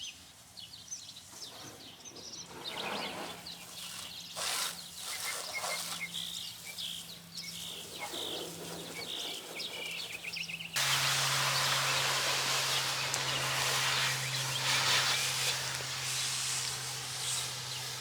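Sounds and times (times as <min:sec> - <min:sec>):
small birds chirping: 0:00.0 - 0:18.0
loud steady hiss: 0:10.8 - 0:18.0.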